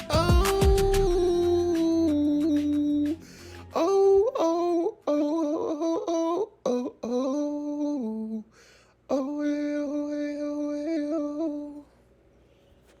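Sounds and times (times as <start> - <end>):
person humming: 0.0 - 8.5.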